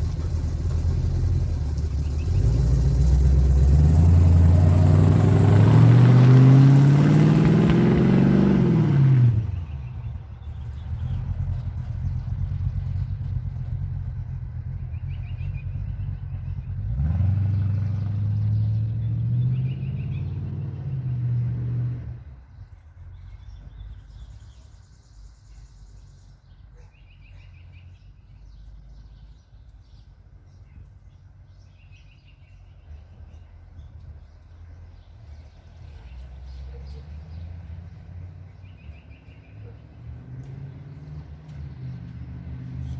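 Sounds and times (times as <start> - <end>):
pickup truck engine revving: 0.0 - 22.3.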